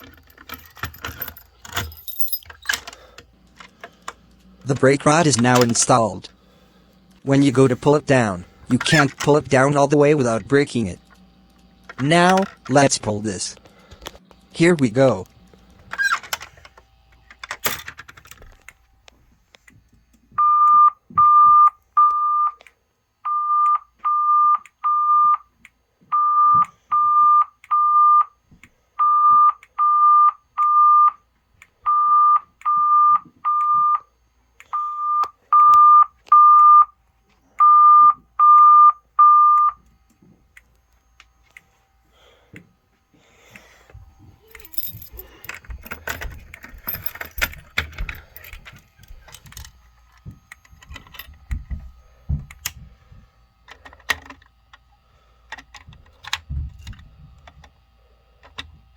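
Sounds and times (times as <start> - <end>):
rattling handling noise: 0.0 - 6.1, 44.1 - 52.8
fire alarm beeps: 20.4 - 22.6, 23.2 - 25.5, 26.1 - 28.4, 29.0 - 31.3, 31.9 - 37.0, 37.6 - 39.9.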